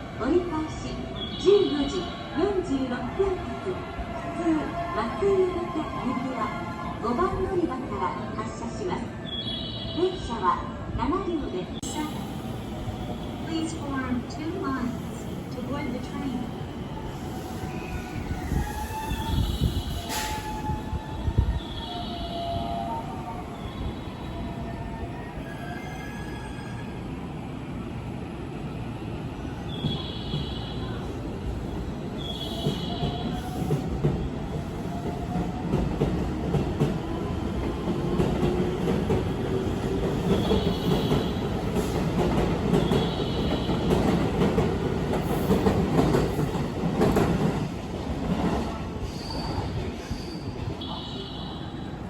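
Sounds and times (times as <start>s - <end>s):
electric train rumbling and whining: 0.0s - 52.0s.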